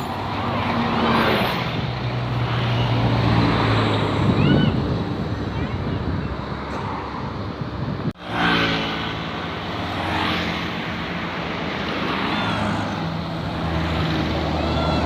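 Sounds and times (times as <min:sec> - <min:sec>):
bus engine humming: 0:00.0 - 0:08.2.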